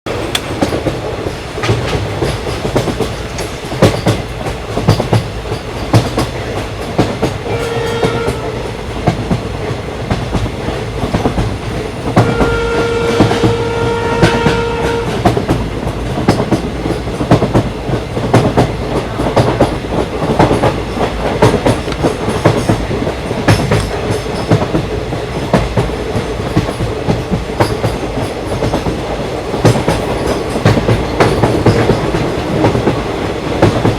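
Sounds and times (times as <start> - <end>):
train wheels clattering: 0.1 - 33.9
train horn blasts: 7.4 - 8.8, 12.2 - 15.4.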